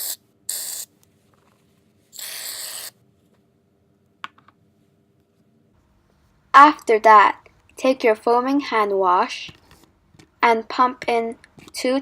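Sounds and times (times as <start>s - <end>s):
aerosol can spraying: 0.0s - 0.9s, 2.2s - 2.9s.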